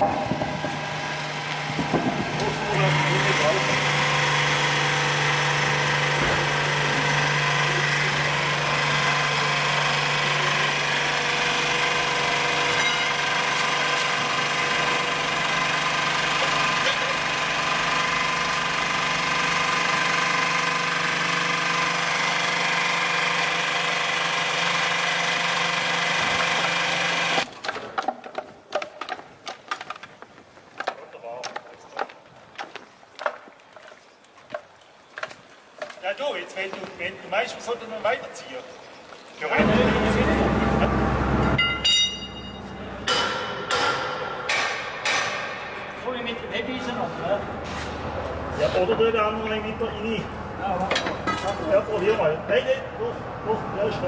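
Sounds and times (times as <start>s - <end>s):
knocks and clanks: 0.0s - 2.6s, 5.8s - 8.4s, 12.3s - 15.1s, 39.6s - 46.0s, 50.8s - 51.8s
engine clattering: 0.0s - 28.0s, 39.6s - 45.8s.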